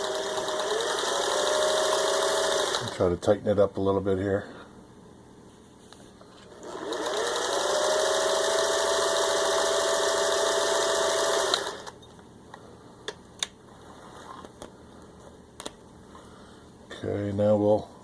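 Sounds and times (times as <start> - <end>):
sewing machine stitching: 0.0 - 3.0, 6.5 - 12.0.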